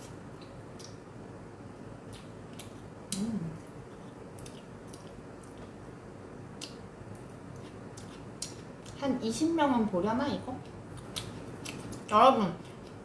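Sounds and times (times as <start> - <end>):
person chewing food: 2.0 - 5.9, 6.6 - 9.0, 10.6 - 13.0
person humming: 3.2 - 3.6.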